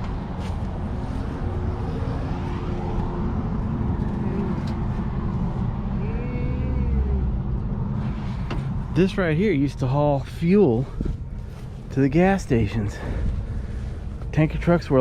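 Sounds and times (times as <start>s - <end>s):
motor vehicle rumbling: 0.0s - 15.0s.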